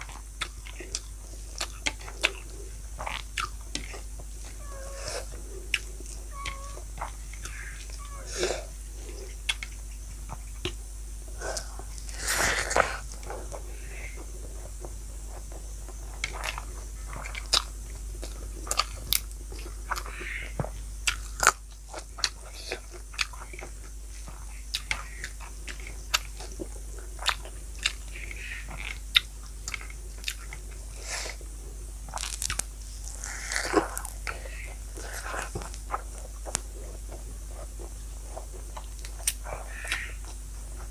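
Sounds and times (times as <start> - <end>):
person chewing crunchy food: 0.0 - 40.9
mouth clicks: 38.8 - 40.4.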